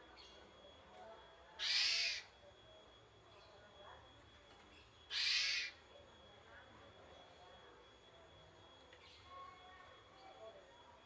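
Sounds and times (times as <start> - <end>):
starling harsh screech calls: 1.6 - 2.3, 5.1 - 5.8.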